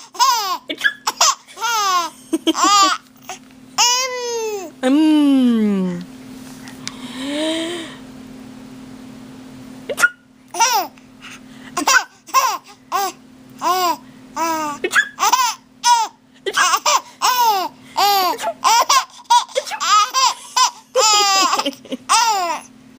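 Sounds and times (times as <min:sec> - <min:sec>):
baby giggling and squealing: 0:00.0 - 0:04.7, 0:09.9 - 0:10.9, 0:11.8 - 0:22.7
steady low hum: 0:00.0 - 0:22.9.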